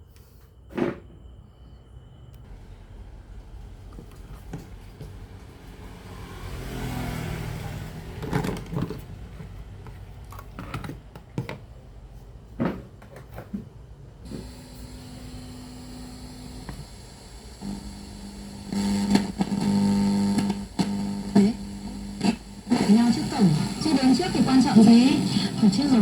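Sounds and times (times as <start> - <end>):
steady low hum: 1.3 - 6.0, 13.9 - 26.0
handling clicks and knocks: 8.2 - 11.8
radio static hiss: 14.3 - 26.0.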